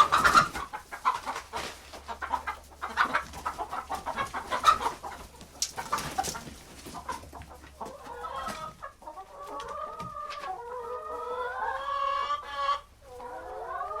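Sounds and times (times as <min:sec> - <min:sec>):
chickens clucking: 0:00.0 - 0:14.0
chicken long drawn-out call: 0:08.0 - 0:14.0.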